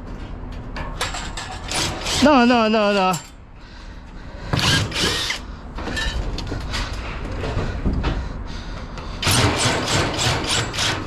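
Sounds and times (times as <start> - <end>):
loud metal scraping: 9.2 - 11.0.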